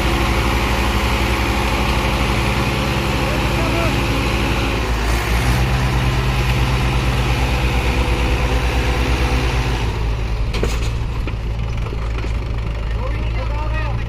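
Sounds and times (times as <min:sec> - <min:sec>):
tractor diesel engine running: 0:00.0 - 0:14.0.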